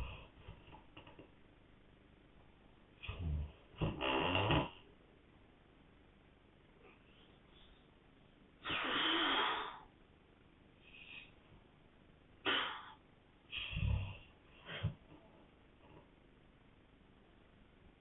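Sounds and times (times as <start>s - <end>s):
man snoring: 3.0s - 4.8s, 13.7s - 14.2s.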